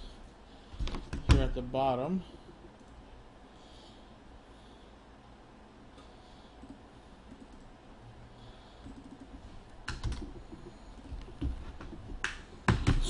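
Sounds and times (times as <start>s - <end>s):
computer keys typing: 8.8s - 13.0s.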